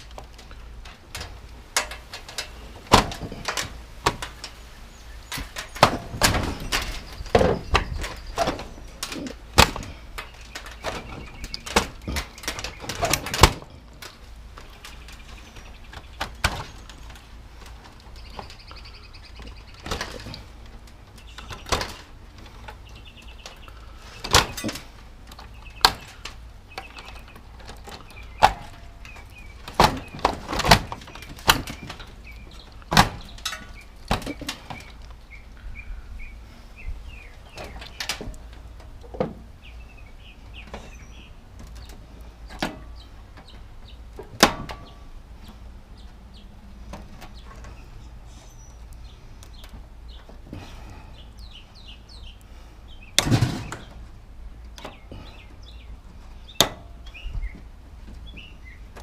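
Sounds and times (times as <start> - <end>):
sharp knocks and clanks: 0.0 - 4.6, 5.3 - 35.1, 40.5 - 46.1, 53.2 - 54.1, 56.5 - 59.0
birds chirping: 0.0 - 59.0.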